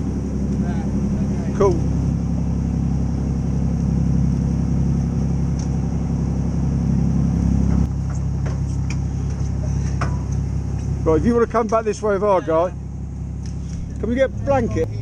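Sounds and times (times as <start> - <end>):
boat engine rumbling: 0.0 - 15.0.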